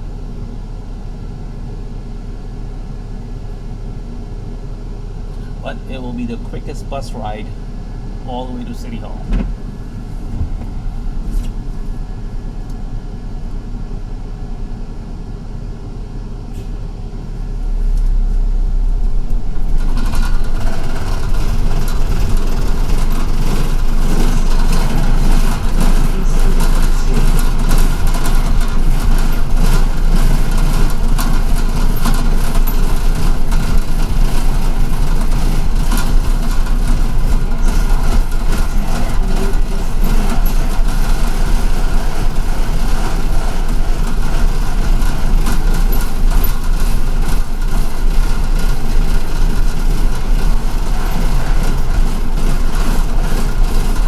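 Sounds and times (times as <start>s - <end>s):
bus engine running: 0.0s - 54.0s.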